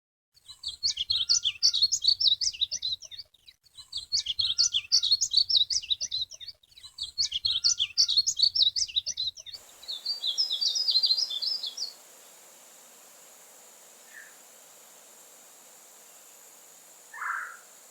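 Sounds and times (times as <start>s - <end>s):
bird warbling song: 0.4s - 12.6s, 13.6s - 17.9s
background hiss: 7.7s - 17.9s.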